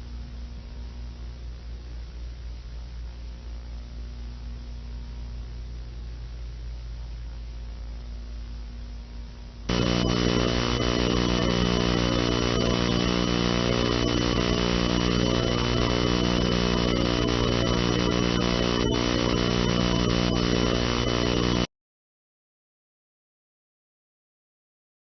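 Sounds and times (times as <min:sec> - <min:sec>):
crackles: 0:09.7 - 0:21.7
harsh electronic buzzing drone: 0:09.7 - 0:21.7
high whine: 0:09.7 - 0:21.7.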